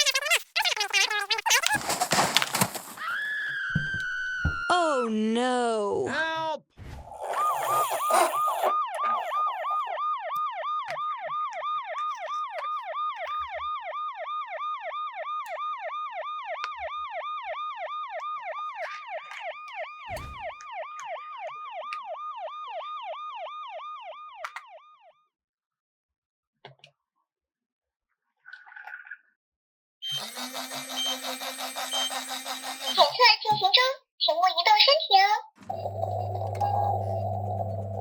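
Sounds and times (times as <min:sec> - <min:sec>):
electronic toy siren wailing: 0:03.0 - 0:04.7, 0:07.2 - 0:25.2, 0:30.0 - 0:38.0.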